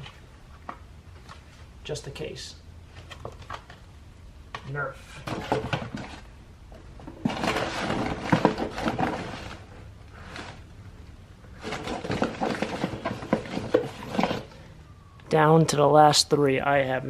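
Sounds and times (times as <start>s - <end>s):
objects clattering and scraping: 2.9s - 3.9s, 4.5s - 14.8s.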